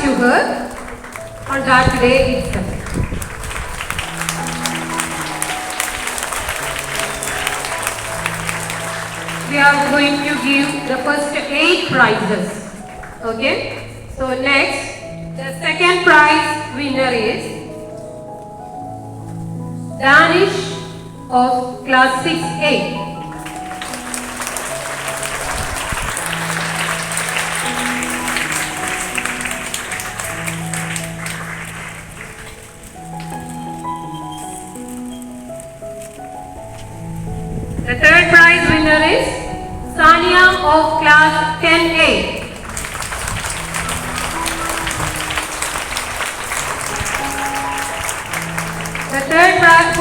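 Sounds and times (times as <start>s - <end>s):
audience applauding: 0.0s - 14.1s, 23.0s - 34.9s, 42.0s - 50.0s
background music with low notes: 0.0s - 50.0s
slow instrumental tune: 0.0s - 50.0s.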